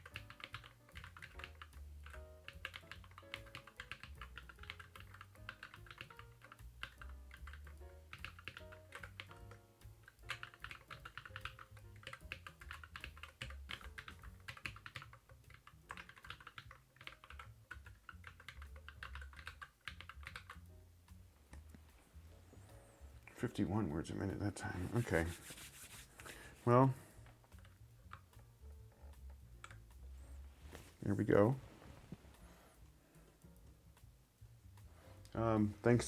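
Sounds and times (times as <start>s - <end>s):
fast typing on mechanical keyboard: 0.0s - 20.7s, 26.7s - 28.4s.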